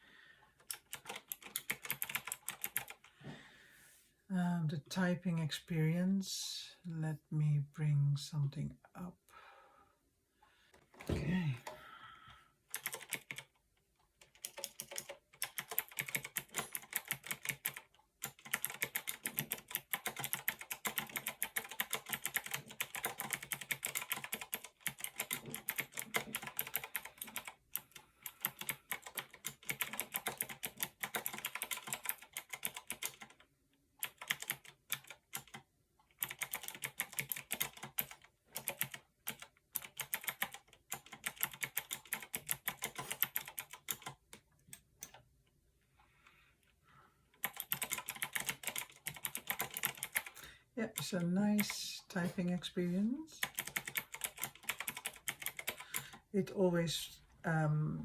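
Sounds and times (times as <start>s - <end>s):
keyboard keystroke clacks: 14.2s - 27.5s, 47.4s - 50.3s.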